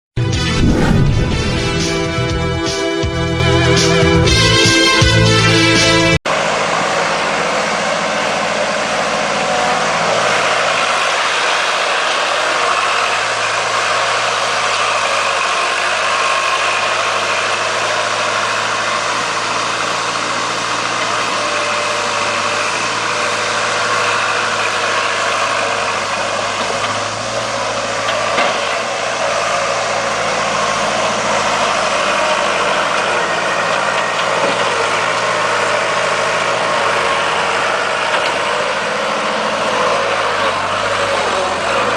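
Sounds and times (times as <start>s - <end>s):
loader engine running: 29.2s - 41.9s.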